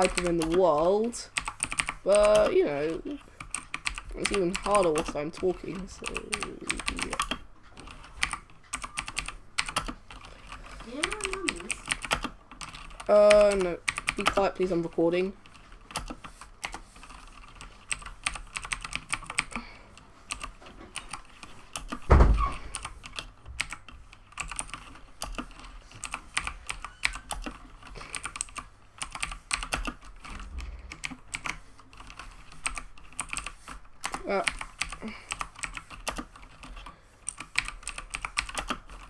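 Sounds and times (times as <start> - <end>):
clicky mechanical keyboard typing: 0.0 - 39.0
loud thump: 22.1 - 22.5.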